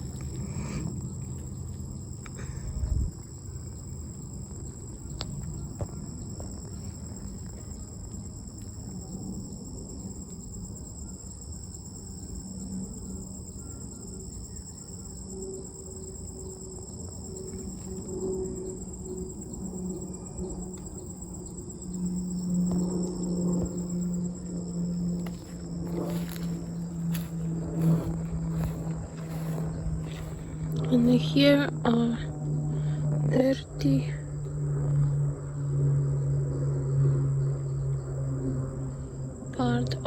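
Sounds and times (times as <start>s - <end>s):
low rumble: 0.0s - 5.0s, 22.2s - 39.3s
low hum: 0.0s - 11.1s, 15.3s - 40.0s
high-pitched insect chorus: 0.0s - 40.0s.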